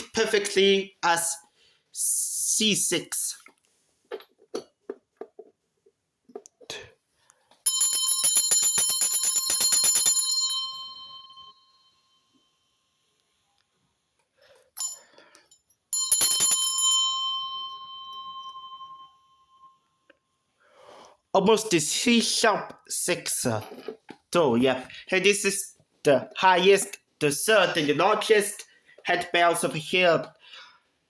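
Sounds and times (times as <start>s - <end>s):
handbell ringing: 7.7s - 12.2s, 14.8s - 15.2s, 15.9s - 19.8s.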